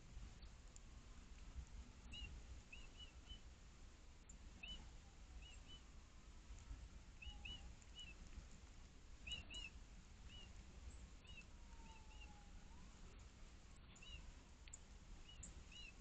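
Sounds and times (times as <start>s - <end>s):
low steady rumble: 0.0s - 16.0s
small bird chirps: 2.0s - 3.5s, 4.3s - 5.9s, 7.2s - 8.4s, 9.2s - 16.0s.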